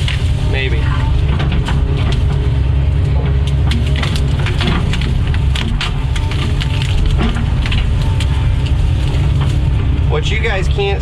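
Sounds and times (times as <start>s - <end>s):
excavator diesel engine running: 0.0s - 11.0s
wood and branches cracking: 0.0s - 11.0s.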